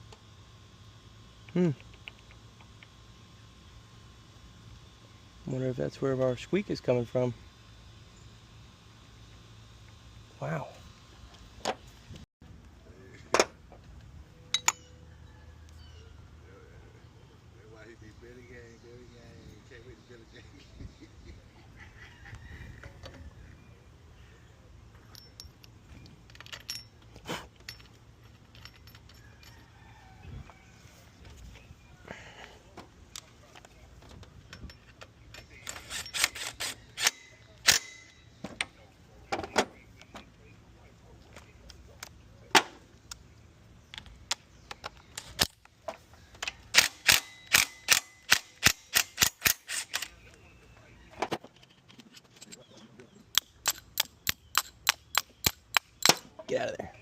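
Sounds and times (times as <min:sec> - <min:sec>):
steady low hum: 0:00.0 - 0:57.0
metal tools clinking: 0:14.5 - 0:15.0, 0:24.9 - 0:29.8, 0:34.5 - 0:38.3.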